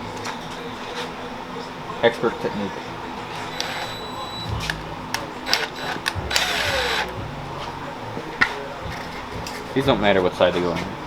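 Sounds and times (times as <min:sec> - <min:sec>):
power tool motor whirring: 0:03.3 - 0:07.2
sharp metallic clicks: 0:03.4 - 0:07.2.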